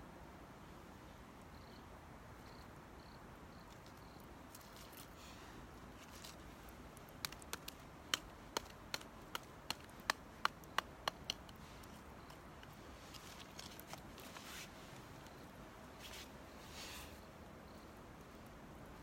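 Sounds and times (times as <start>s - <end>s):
campfire crackling pops: 6.9s - 12.8s.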